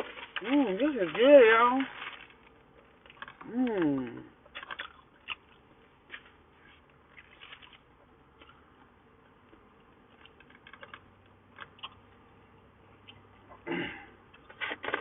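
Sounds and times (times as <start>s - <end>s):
food wrapper handling: 0.0s - 7.8s.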